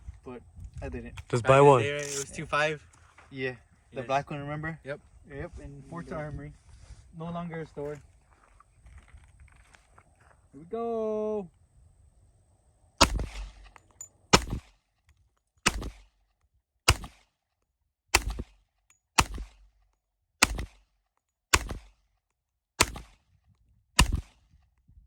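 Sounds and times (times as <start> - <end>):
pistol shots with echo: 13.0 - 14.7, 15.6 - 16.1, 16.9 - 17.2, 18.1 - 18.6, 19.2 - 19.8, 20.4 - 20.8, 21.5 - 22.0, 22.8 - 23.2, 24.0 - 24.4.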